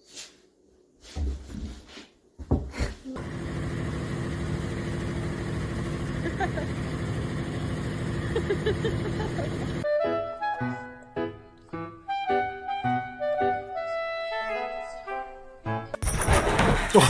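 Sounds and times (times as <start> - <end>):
vehicle engine idling: 3.2 - 9.8
clarinet music: 9.8 - 16.0.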